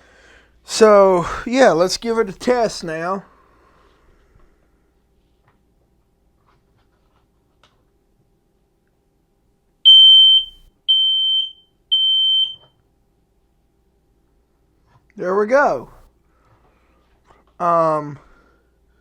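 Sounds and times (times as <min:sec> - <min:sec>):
smoke alarm beeping: 0:09.9 - 0:12.7.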